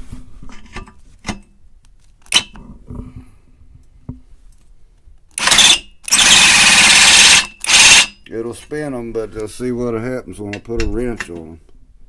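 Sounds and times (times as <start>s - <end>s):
cordless impact wrench spinning: 5.4s - 8.2s.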